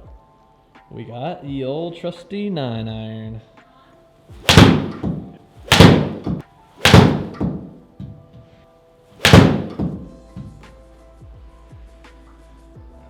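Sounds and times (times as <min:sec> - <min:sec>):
background music: 0:00.0 - 0:13.0
golf club striking ball: 0:04.4 - 0:08.2, 0:09.2 - 0:10.2.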